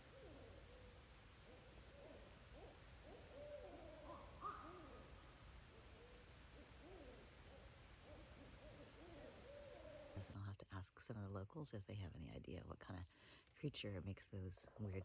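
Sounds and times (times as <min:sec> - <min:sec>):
high owl call: 0:00.0 - 0:10.3
owls hooting and wailing: 0:00.0 - 0:10.3.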